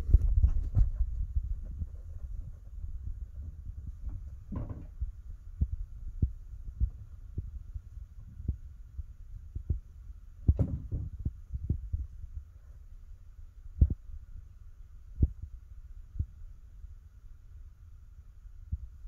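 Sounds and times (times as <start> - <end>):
muffled thuds from floor above: 0.0 - 3.0, 3.6 - 7.0, 10.5 - 11.8
steady low hum: 0.0 - 19.0
clattering knocks: 4.1 - 5.0.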